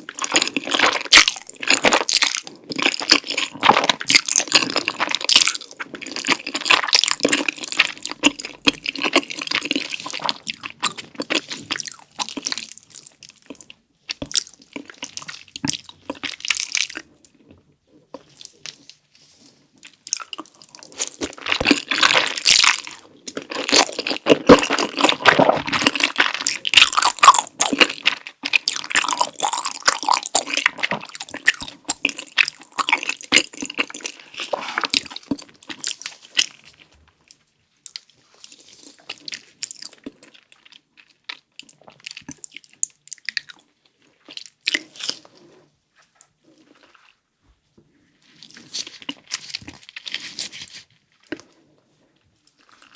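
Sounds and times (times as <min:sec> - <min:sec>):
crunchy biting and chewing: 0:00.0 - 0:17.5, 0:19.8 - 0:36.8, 0:37.9 - 0:45.5.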